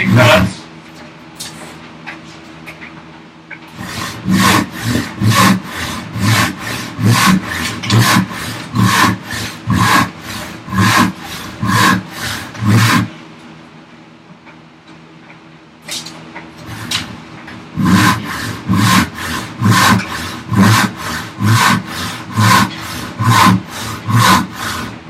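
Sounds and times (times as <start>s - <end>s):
hand saw cutting wood: 0.0s - 0.5s, 3.7s - 13.2s, 15.9s - 25.0s.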